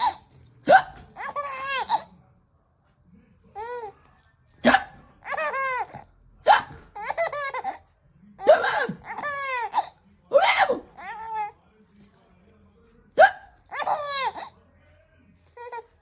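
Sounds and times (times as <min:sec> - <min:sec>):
baby laughing: 0:00.0 - 0:02.1, 0:04.7 - 0:07.8, 0:08.4 - 0:11.5, 0:13.2 - 0:14.6, 0:15.6 - 0:15.9.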